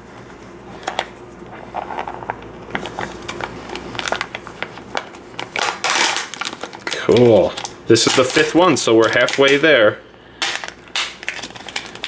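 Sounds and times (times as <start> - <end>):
plastic packaging crinkling: 0.9 - 12.0
packaging tearing: 1.7 - 9.8, 10.4 - 12.0.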